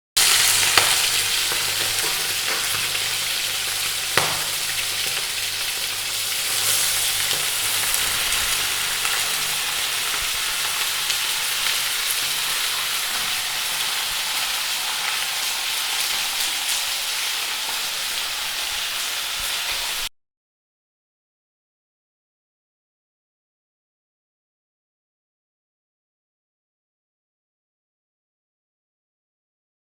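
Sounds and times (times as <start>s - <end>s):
food sizzling in hot oil: 0.2s - 20.1s.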